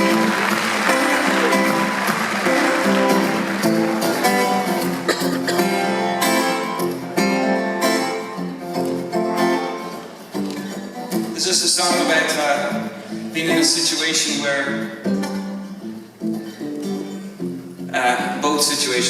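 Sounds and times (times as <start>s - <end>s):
acoustic guitar picking and strumming: 0.0s - 19.0s.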